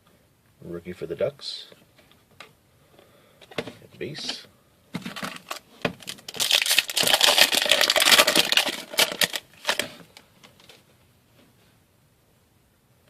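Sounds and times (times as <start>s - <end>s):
cards and wrapper crackling: 5.1s - 10.8s.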